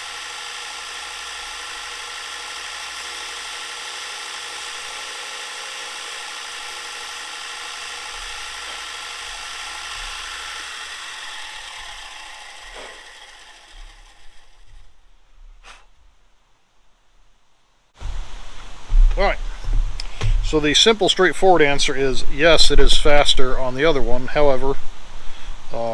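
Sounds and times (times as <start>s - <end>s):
bench grinder running: 0.0s - 15.0s.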